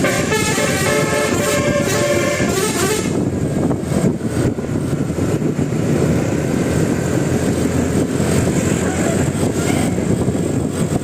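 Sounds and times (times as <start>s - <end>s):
bus engine running: 0.0s - 11.0s.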